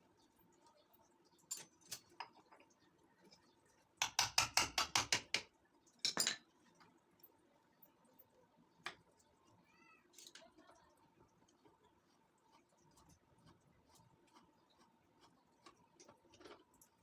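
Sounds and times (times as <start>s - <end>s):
light clinks: 1.4s - 2.7s.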